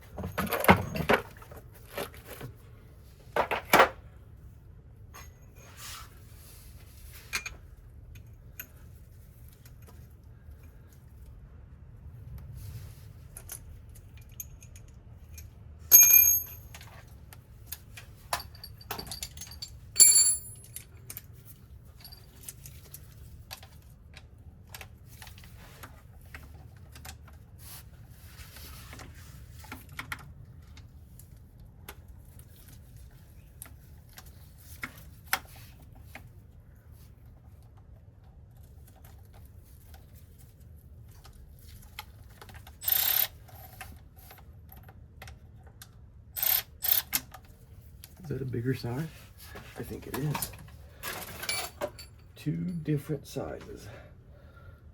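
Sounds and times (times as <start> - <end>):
metal tools clinking: 14.2 - 16.9, 18.4 - 20.9, 50.3 - 52.8.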